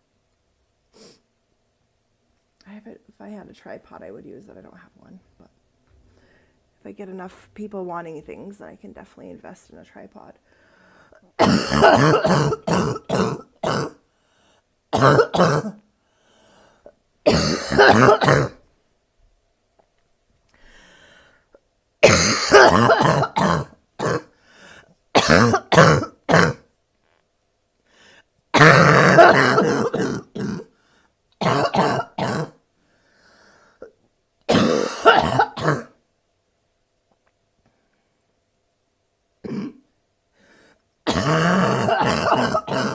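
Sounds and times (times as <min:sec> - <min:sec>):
woman coughing: 0:11.4 - 0:14.0, 0:15.0 - 0:15.8, 0:17.3 - 0:18.6, 0:22.0 - 0:24.3, 0:25.2 - 0:26.6, 0:28.6 - 0:30.7, 0:31.4 - 0:32.6, 0:34.5 - 0:36.0, 0:39.4 - 0:39.8, 0:41.1 - 0:42.9.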